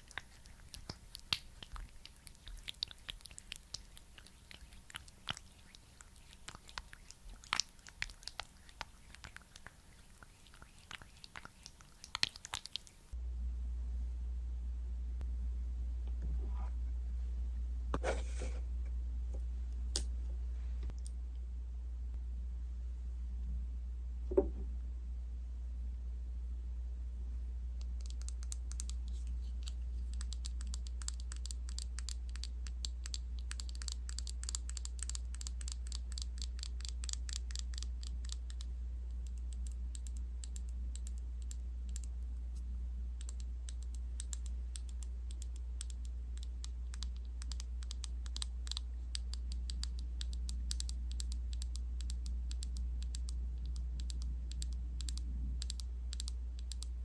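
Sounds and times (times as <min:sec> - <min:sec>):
steady low hum: 0:13.1 - 0:57.0.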